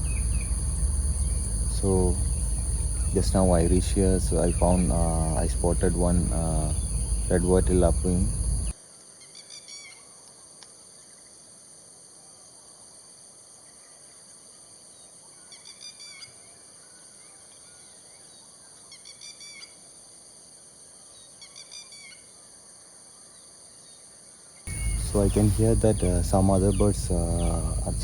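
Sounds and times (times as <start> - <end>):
bird chirping: 0.0 - 8.7, 24.7 - 28.0
high-pitched insect drone: 0.0 - 8.7, 24.7 - 28.0.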